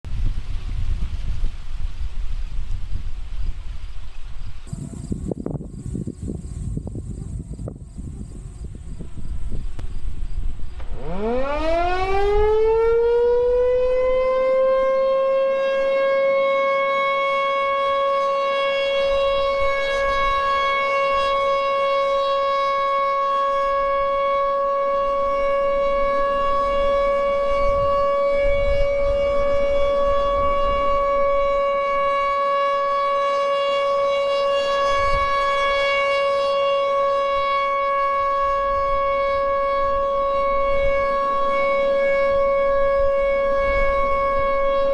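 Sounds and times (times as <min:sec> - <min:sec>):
warning siren rising to steady tone: 0:04.7 - 0:44.9.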